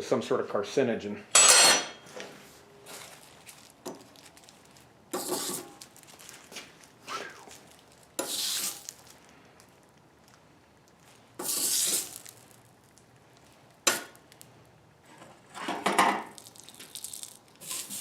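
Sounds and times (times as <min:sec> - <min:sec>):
wax hissing on hot steel: 0:11.4 - 0:12.3, 0:17.6 - 0:18.0.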